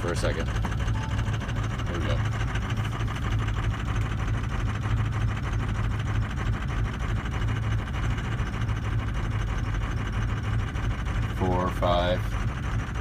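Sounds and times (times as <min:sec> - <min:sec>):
diesel engine idling: 0:00.0 - 0:13.0.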